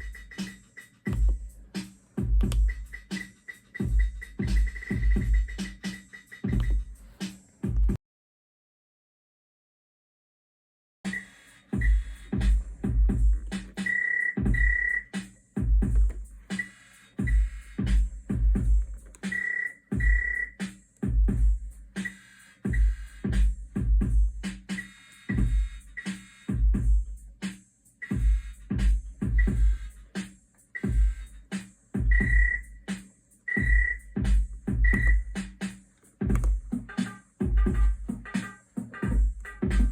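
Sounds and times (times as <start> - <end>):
clicky percussion: 0.0 - 6.8, 18.6 - 21.1, 33.6 - 37.2.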